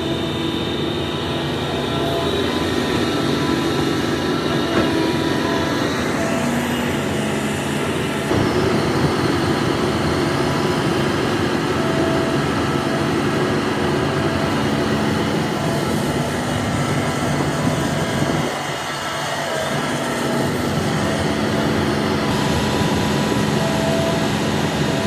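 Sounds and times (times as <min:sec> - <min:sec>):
excavator diesel engine running: 0:00.0 - 0:25.0.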